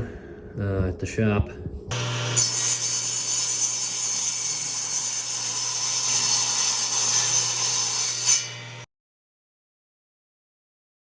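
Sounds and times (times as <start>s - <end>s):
power saw cutting wood: 1.9s - 8.9s.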